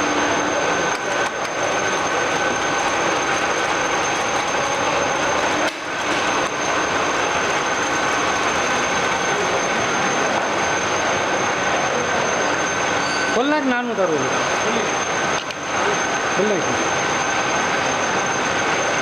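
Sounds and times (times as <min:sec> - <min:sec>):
drilling machine geared whir: 0:00.0 - 0:11.9.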